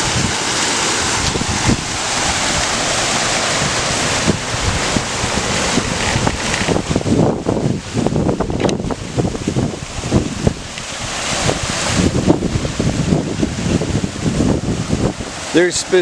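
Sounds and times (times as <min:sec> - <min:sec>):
water splashing over stones: 0:00.0 - 0:16.0
wind rumbling on microphone: 0:00.0 - 0:16.0.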